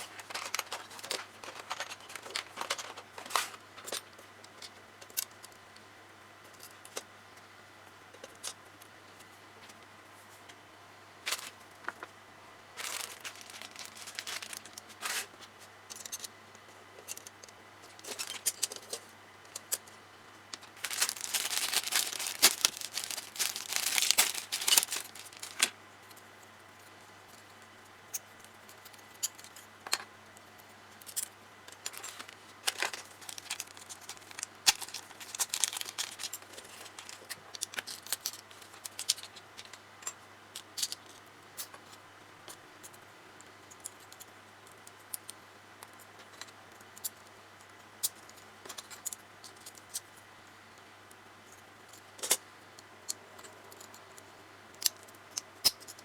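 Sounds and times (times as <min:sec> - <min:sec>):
plastic packaging crinkling: 0:00.0 - 0:03.6, 0:12.8 - 0:15.0, 0:20.6 - 0:25.8, 0:31.8 - 0:39.3
small plastic parts clicking: 0:20.5 - 0:25.8, 0:31.0 - 0:39.8.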